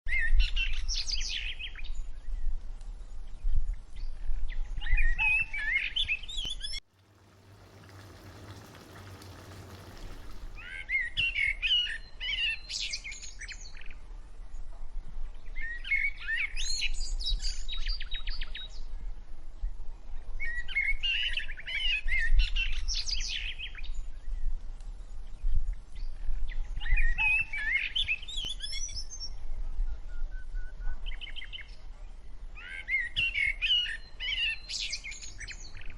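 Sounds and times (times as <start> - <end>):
small birds chirping: 6.4 - 10.7
faint hiss: 6.9 - 10.6.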